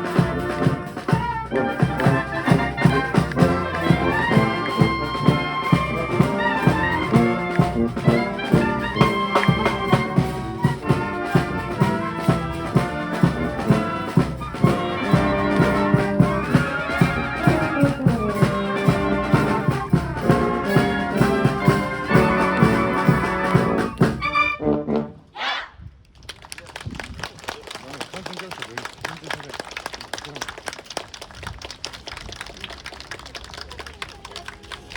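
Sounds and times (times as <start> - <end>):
steady drum beat: 0.0 - 24.4
wind band playing a march: 0.0 - 25.7.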